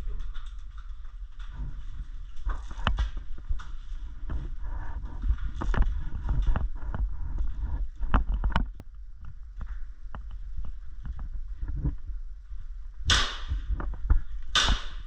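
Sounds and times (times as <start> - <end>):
microphone handling noise: 0.0 - 15.0
wind rumbling on microphone: 0.0 - 15.0
sharp clicks and knocks: 8.0 - 12.0.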